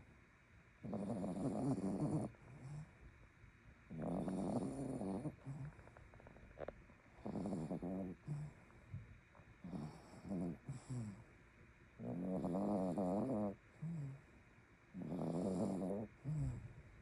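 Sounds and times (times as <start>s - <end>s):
dog snoring: 0.8s - 3.0s, 3.9s - 8.7s, 9.6s - 11.3s, 12.0s - 14.3s, 14.9s - 16.8s.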